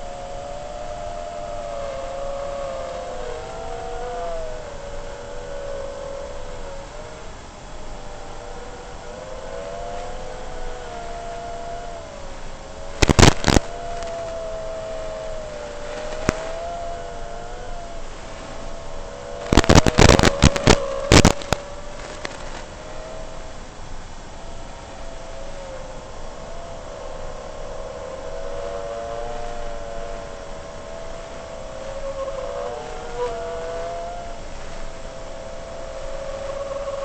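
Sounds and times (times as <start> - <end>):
loud crackling bursts: 12.3 - 16.8, 18.0 - 22.8.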